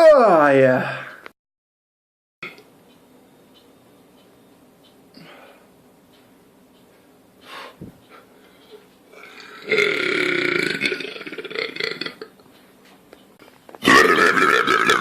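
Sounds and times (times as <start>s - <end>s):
person burping: 9.2s - 12.3s, 13.8s - 15.0s.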